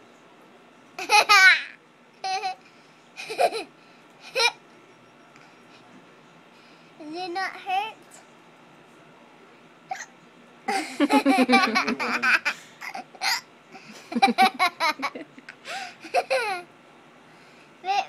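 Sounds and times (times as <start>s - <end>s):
child laughing: 3.2s - 3.7s, 10.7s - 13.1s, 16.0s - 16.6s.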